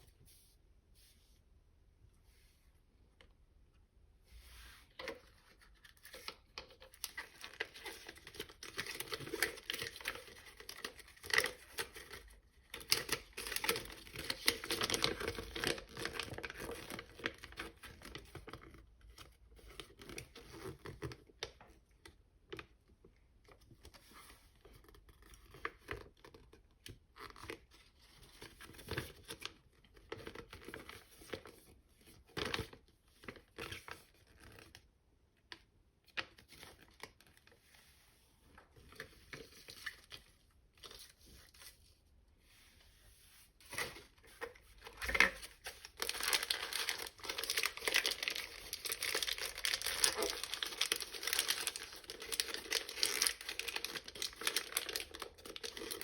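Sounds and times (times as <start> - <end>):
packaging crinkling and tearing: 5.5 - 21.4, 43.6 - 56.0.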